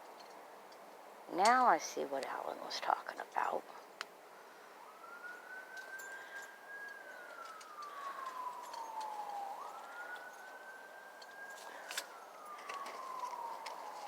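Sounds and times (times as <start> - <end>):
siren wailing: 4.3 - 14.0.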